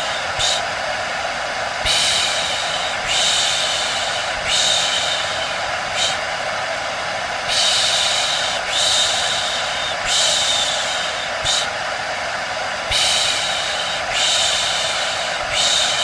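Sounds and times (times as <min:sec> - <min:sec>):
hair dryer running: 0:00.0 - 0:16.0
high hissing bursts: 0:01.8 - 0:06.2, 0:07.4 - 0:11.8, 0:12.8 - 0:16.0
faint hum: 0:07.4 - 0:11.8.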